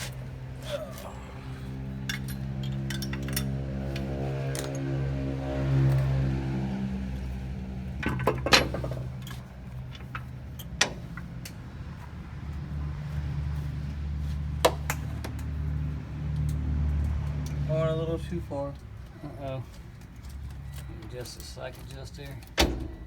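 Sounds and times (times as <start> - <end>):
metallic clanks of brake work: 1.8 - 6.2, 7.2 - 12.2, 14.6 - 15.6, 18.7 - 23.0.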